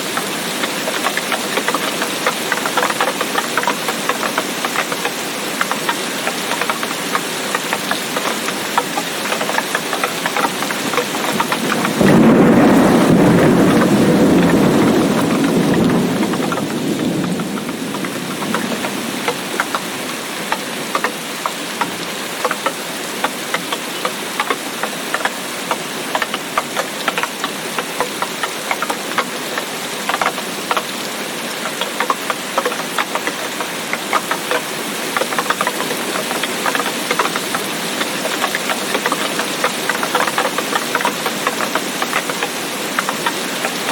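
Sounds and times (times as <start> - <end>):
heavy rain with ticking drops: 0.0 - 43.9
thunder rolling: 10.8 - 19.8.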